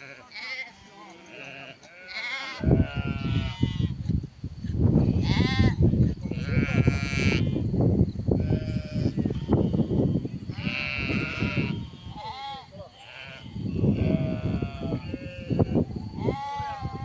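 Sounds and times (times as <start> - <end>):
sheep bleating: 0.0 - 4.0, 5.0 - 7.6, 8.4 - 17.0.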